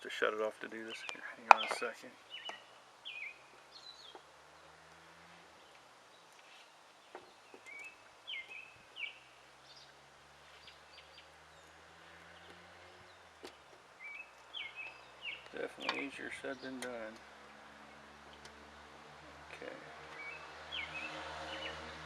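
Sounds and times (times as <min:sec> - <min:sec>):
faint bird chirps: 0:00.9 - 0:04.7, 0:05.6 - 0:16.8.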